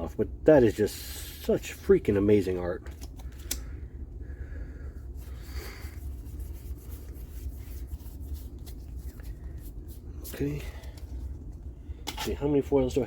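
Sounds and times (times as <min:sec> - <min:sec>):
low steady hum: 0:00.0 - 0:13.0
soft breath: 0:03.3 - 0:06.2
trading cards rubbing and clicking: 0:05.6 - 0:11.3.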